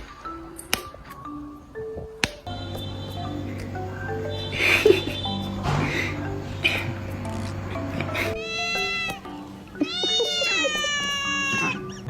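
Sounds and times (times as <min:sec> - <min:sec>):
snapping clicks: 0:00.0 - 0:02.9
music of short pitched notes: 0:00.0 - 0:12.0
steady low bass note: 0:02.5 - 0:08.3.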